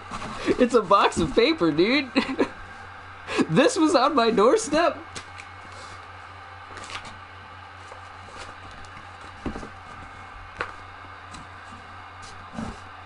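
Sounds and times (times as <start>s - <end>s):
low steady hum: 0.0s - 13.0s
paper rustling: 6.7s - 7.2s, 7.8s - 12.9s.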